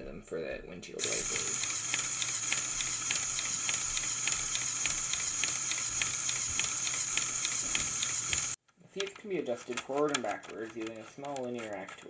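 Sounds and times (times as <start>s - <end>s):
small motor whirring: 1.0s - 8.6s
gears clicking: 1.0s - 12.0s.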